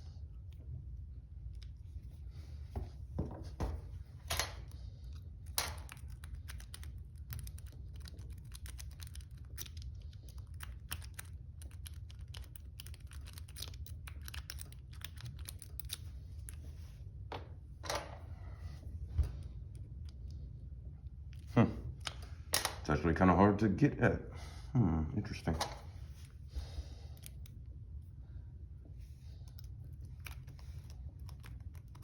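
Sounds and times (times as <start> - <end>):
low steady hum: 0.0 - 32.0
lock pick clicking and scratching: 4.2 - 16.6, 29.5 - 32.0.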